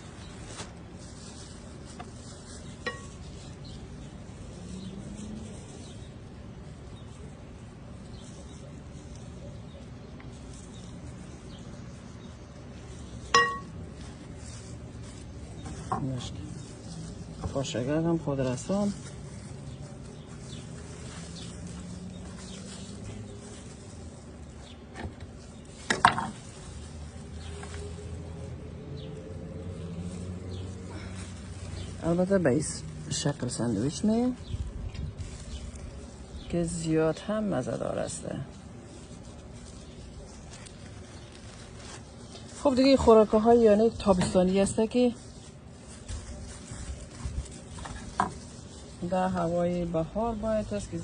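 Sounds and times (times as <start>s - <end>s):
low background noise: 0.0s - 51.0s
low steady hum: 0.0s - 51.0s
utensil clinking against dish: 13.3s - 13.8s.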